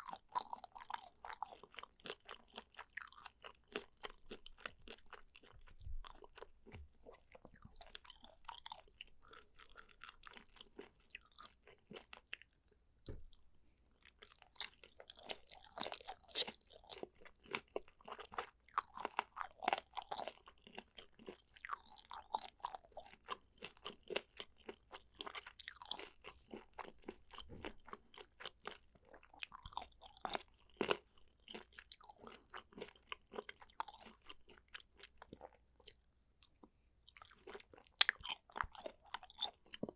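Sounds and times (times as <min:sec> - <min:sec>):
wet chewing: 0:00.0 - 0:13.4, 0:14.0 - 0:39.9.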